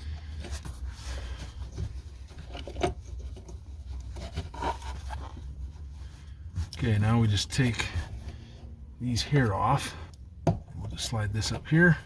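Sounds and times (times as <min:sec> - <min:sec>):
plastic parts rubbing and scraping: 0:00.0 - 0:08.4.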